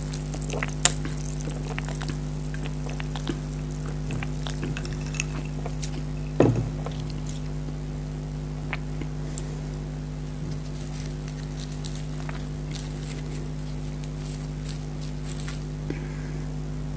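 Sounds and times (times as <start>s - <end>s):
low hum: 0.0s - 16.9s
loud thump: 6.4s - 7.0s.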